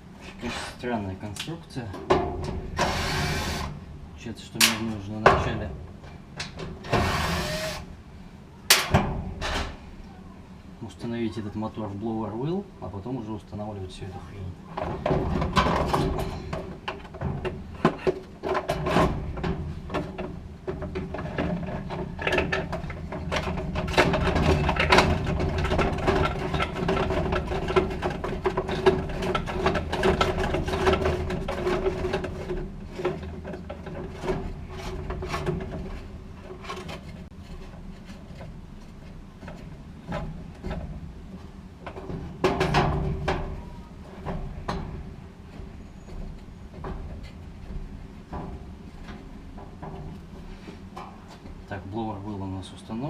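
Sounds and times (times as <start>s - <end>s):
steady low hum: 0.0s - 53.0s
clicks and scraping of dryer parts: 4.5s - 7.1s, 14.6s - 51.8s.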